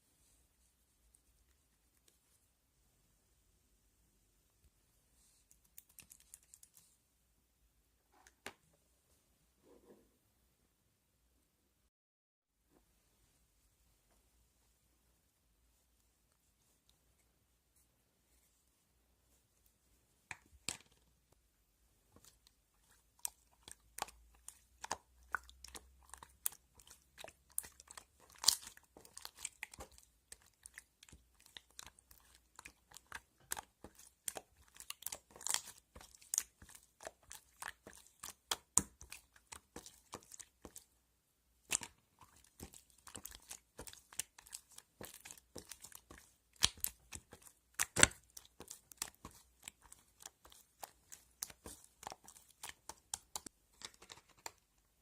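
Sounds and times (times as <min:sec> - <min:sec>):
handling clicks and crinkles: 0:41.6 - 0:55.0.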